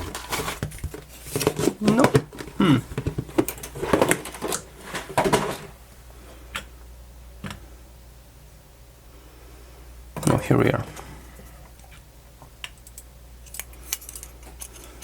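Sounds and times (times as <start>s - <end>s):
hands rummaging through small parts: 12.8s - 15.0s.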